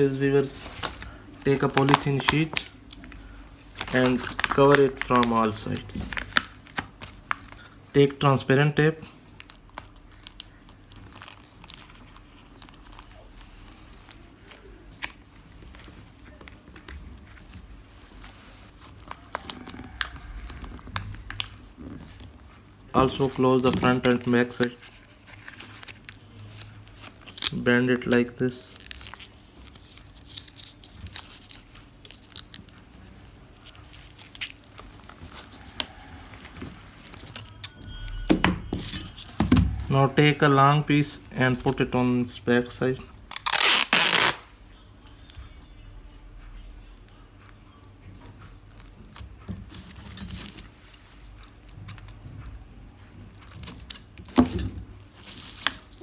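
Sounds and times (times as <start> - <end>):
plastic sheet crinkling: 0.4 - 7.7, 43.3 - 44.5
tape being pulled: 43.3 - 44.5.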